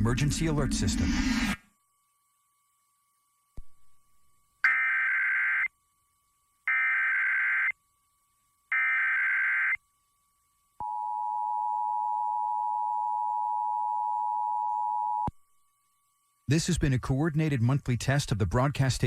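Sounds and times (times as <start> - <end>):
warbling digital data tones: 0.0 - 1.8.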